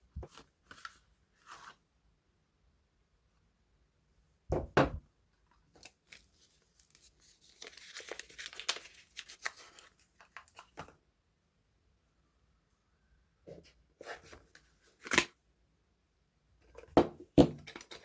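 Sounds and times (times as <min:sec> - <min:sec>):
wrapper crinkling and tearing: 0:05.8 - 0:10.8.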